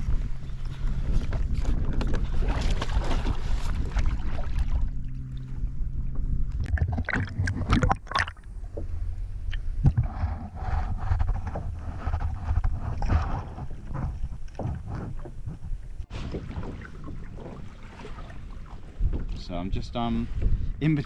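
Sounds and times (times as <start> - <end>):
wind buffeting microphone: 0.0 - 6.7, 7.3 - 21.0
water sloshing around kayak: 0.0 - 21.0
sharp splashes and knocks: 1.1 - 5.4, 6.6 - 8.4, 9.5 - 19.4.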